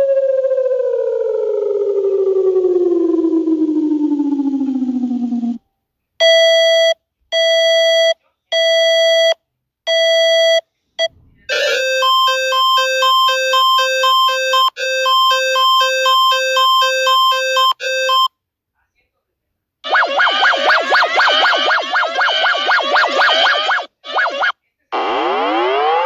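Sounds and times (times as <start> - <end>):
falling siren tone: 0.0 - 5.6, 11.5 - 18.3, 19.8 - 26.0
long electronic beeps: 11.5 - 18.3, 19.9 - 26.0
two-tone warble: 11.5 - 18.3, 19.9 - 24.5.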